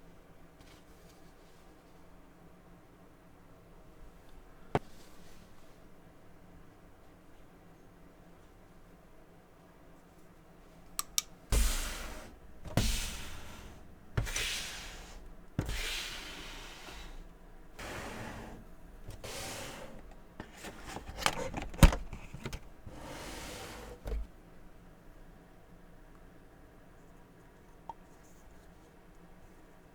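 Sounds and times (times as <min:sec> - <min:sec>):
cardboard box rustling and scraping: 0:17.8 - 0:24.3.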